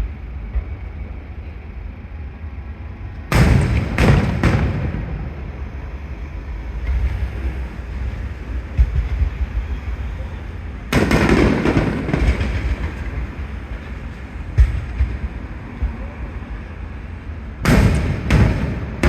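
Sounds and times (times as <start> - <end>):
fireworks bursting: 3.3 - 6.3, 6.9 - 16.0, 17.6 - 19.0
loud boom with rumbling echo: 3.3 - 9.8, 10.9 - 13.8, 14.4 - 16.1, 17.6 - 19.0.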